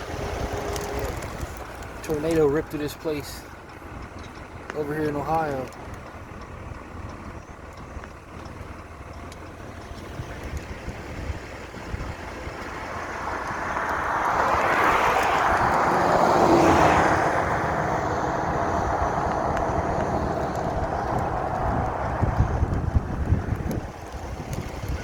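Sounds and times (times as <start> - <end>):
wind rumble on microphone: 9.6 - 25.0
vehicle passing by: 9.8 - 25.0.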